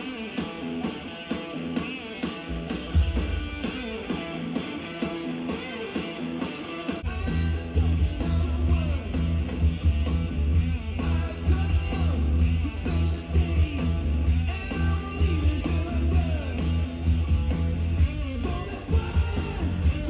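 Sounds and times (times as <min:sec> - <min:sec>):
live rock music: 0:00.0 - 0:20.0
heavy bass line: 0:02.5 - 0:04.5, 0:07.0 - 0:20.0.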